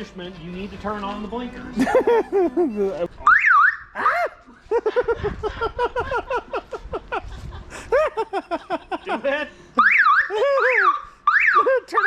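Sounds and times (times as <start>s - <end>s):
person laughing hard: 1.8s - 3.0s, 4.0s - 9.5s, 10.3s - 10.9s.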